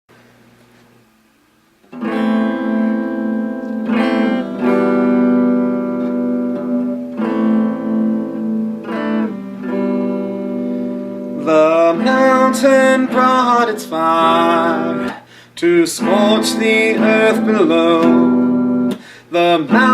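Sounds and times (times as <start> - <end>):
acoustic guitar strumming chords: 1.9 - 19.9.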